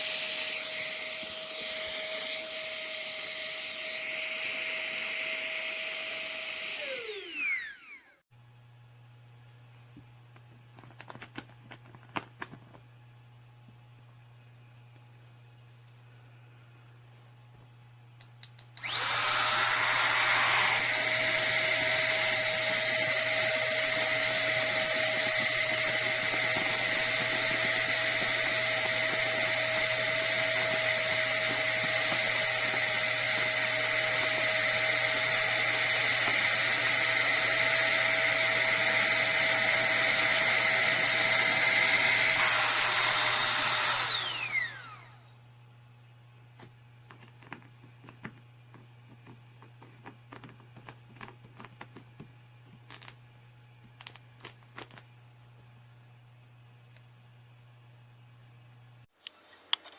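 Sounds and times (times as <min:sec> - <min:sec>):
electric air pump fan whine: 0:00.0 - 0:59.2
clicks: 0:18.2 - 0:19.0.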